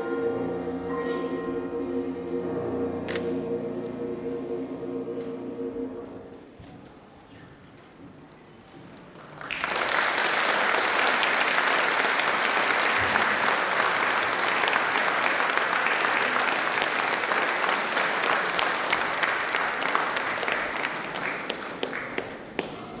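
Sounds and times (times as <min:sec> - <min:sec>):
audience applauding: 0:09.1 - 0:23.0.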